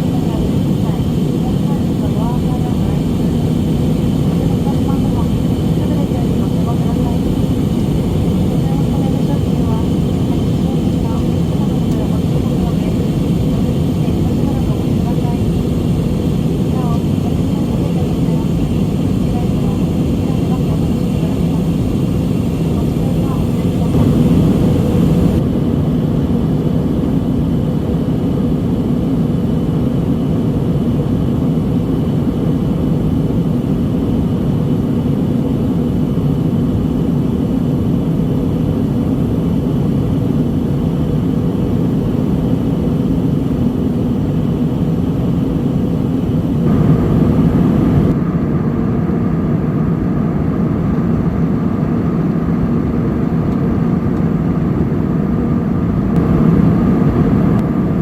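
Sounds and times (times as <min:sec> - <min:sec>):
airliner cabin engine drone: 0:00.0 - 0:58.0
higher steady tone: 0:20.2 - 0:25.4.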